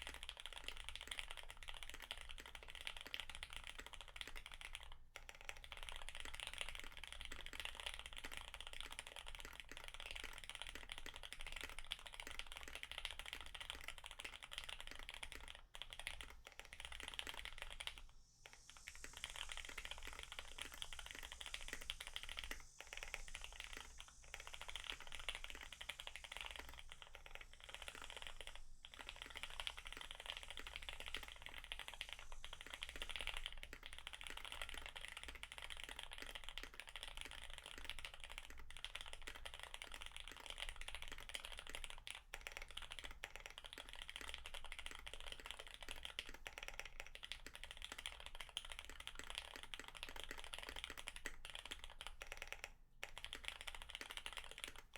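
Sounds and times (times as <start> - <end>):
fast typing on mechanical keyboard: 0.0 - 54.9.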